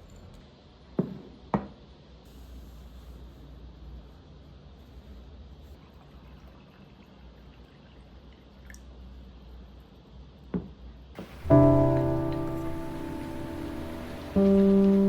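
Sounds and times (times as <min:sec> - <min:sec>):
low steady hum: 0:11.2 - 0:15.0.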